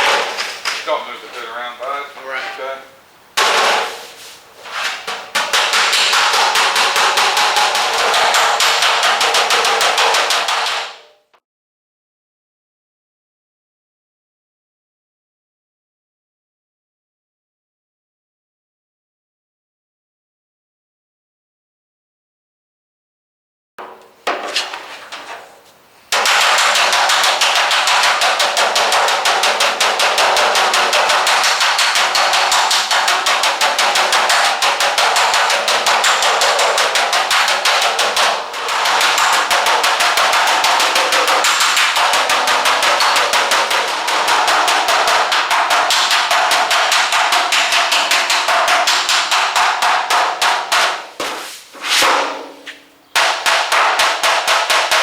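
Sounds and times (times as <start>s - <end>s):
body hammer tapping sheet metal: 3.4s - 11.2s, 23.8s - 55.0s.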